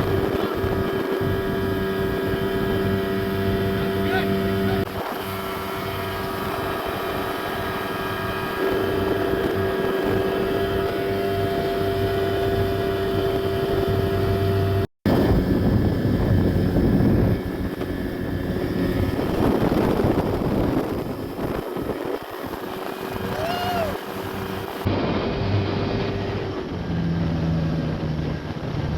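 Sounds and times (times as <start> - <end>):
boat engine running: 0.0 - 28.9
wind: 0.0 - 28.9
rushing water: 17.4 - 26.9.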